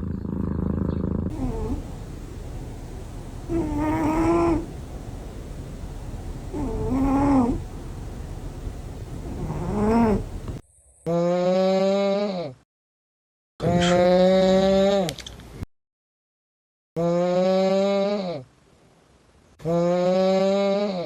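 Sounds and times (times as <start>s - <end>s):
cat snoring: 1.3s - 10.6s
low pitched drone: 1.3s - 10.6s
steady low rumble: 1.3s - 10.6s.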